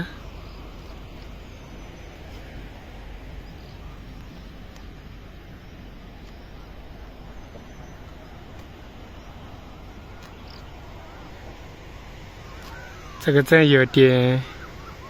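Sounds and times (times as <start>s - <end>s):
low rumble with hiss: 0.0s - 15.0s
faint ticks: 3.5s - 5.0s.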